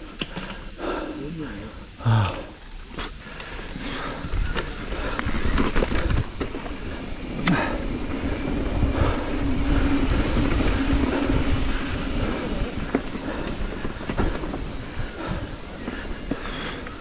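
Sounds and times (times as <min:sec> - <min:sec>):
wheels rattling over rough ground: 0:01.9 - 0:17.0
wind on microphone: 0:03.6 - 0:17.0.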